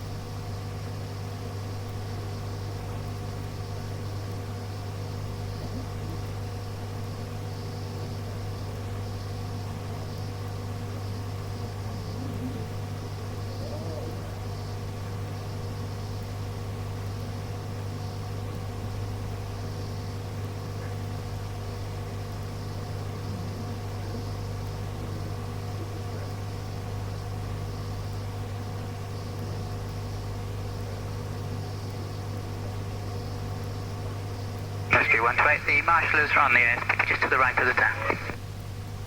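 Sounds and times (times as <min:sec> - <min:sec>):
low electrical hum: 0:00.0 - 0:39.0
radio hiss: 0:34.9 - 0:38.4.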